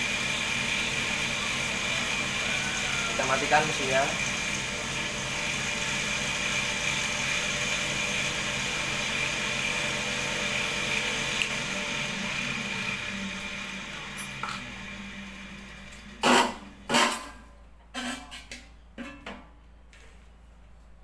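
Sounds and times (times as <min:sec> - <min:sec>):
motor whirring with high whine: 0:00.0 - 0:16.1.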